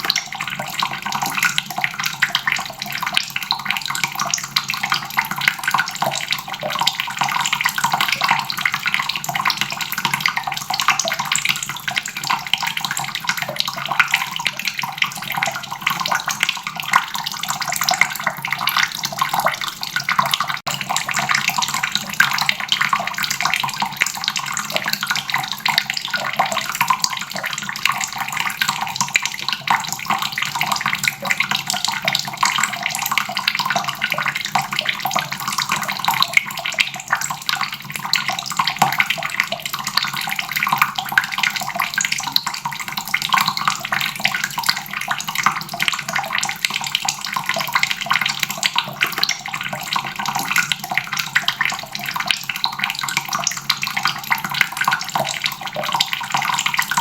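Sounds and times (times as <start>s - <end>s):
faucet water splashing into basin: 0.0s - 57.0s.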